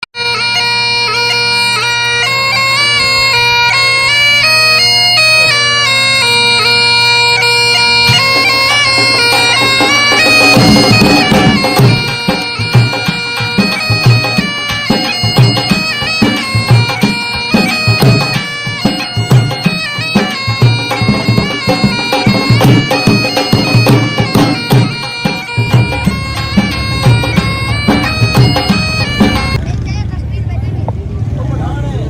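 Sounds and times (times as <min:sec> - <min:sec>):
bagpipe melody over drone: 0:00.2 - 0:30.1
drum beats: 0:07.4 - 0:31.1.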